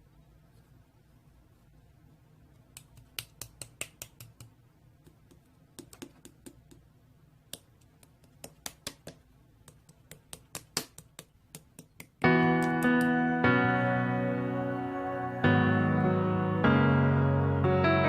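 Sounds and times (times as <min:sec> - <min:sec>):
quick clicks and taps: 0:02.6 - 0:06.9, 0:07.5 - 0:13.2.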